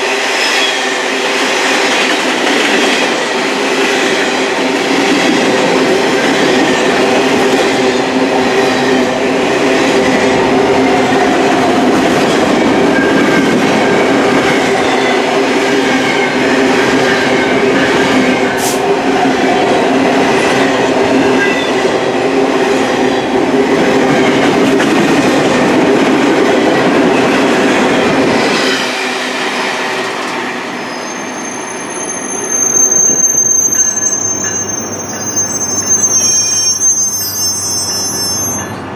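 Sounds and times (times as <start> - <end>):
freight train cars rolling: 0.0 - 38.9
rail clatter: 1.2 - 37.3
wheels squealing: 30.6 - 38.9
high-pitched wheel squeal: 30.7 - 38.9.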